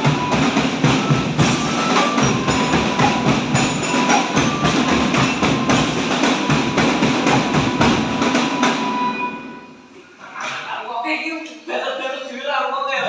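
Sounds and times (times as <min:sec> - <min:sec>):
marching drums playing fast rhythm: 0:00.0 - 0:09.2.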